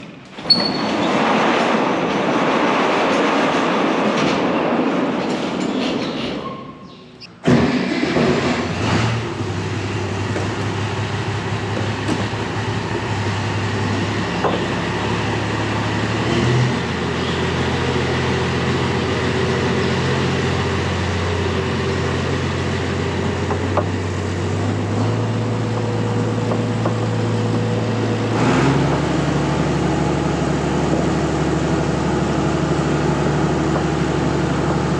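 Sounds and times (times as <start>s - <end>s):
heavy diesel machinery running: 7.4s - 34.9s.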